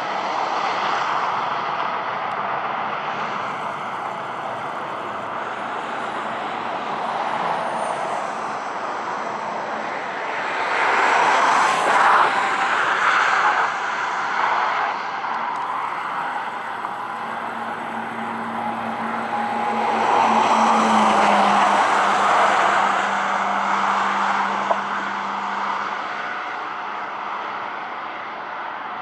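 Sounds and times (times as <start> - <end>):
background traffic: 0.0 - 29.0
vehicle passing by: 15.6 - 26.8.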